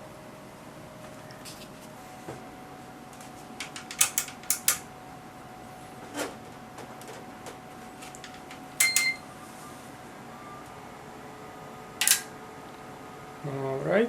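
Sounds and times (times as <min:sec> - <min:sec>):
faint electrical hum: 0:00.0 - 0:14.0
tools clicking and clinking: 0:03.6 - 0:04.9, 0:08.2 - 0:09.2, 0:12.0 - 0:12.3
brief metallic ring: 0:08.8 - 0:09.2.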